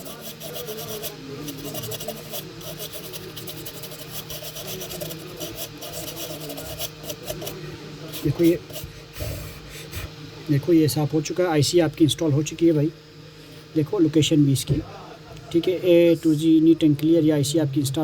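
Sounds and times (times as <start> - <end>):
scratchy scrubbing on circuit board: 0.0 - 10.0.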